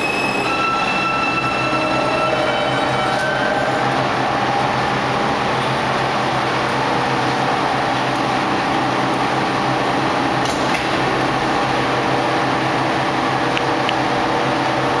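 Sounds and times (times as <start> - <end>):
train equipment humming: 0.0 - 15.0.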